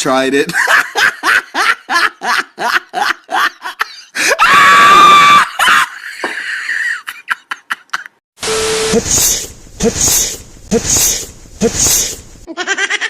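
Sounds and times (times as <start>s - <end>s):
woman screaming: 4.3s - 5.8s.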